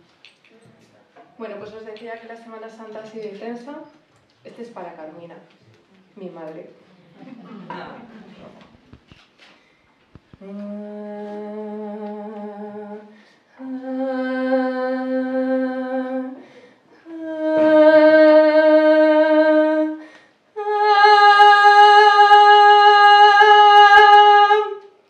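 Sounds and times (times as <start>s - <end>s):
breaths: 9.4s - 10.1s, 13.1s - 13.6s, 16.4s - 17.1s, 20.0s - 20.5s
woman singing held notes: 10.4s - 14.0s, 17.0s - 20.0s.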